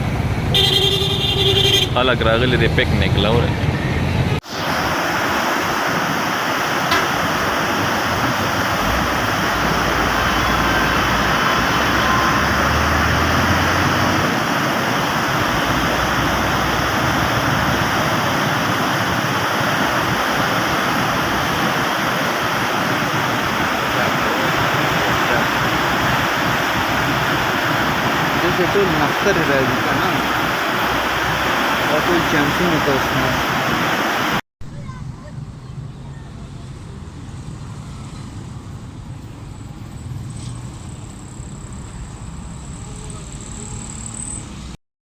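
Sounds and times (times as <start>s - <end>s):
river rushing: 1.8s - 34.4s.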